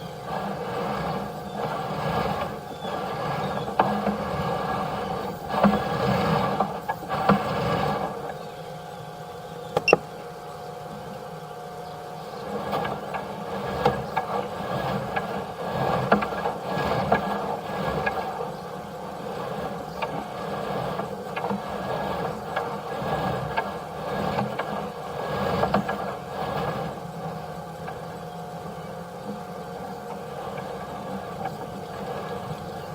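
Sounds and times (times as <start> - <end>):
steady machine hum: 0.0 - 32.9
camera scraping and knocking in drain: 0.4 - 8.4, 19.2 - 27.1.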